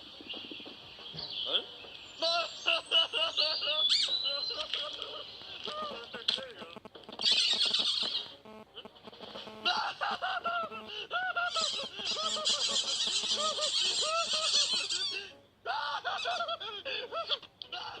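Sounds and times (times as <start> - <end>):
high bird chatter: 0.0 - 8.4, 11.5 - 15.2
birds honking calls: 0.0 - 10.0, 10.8 - 15.6.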